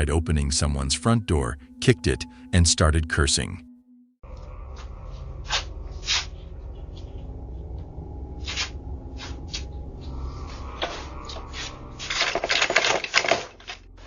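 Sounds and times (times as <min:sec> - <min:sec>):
steady low hum: 0:00.0 - 0:14.0
rattling and scraping: 0:10.6 - 0:14.0.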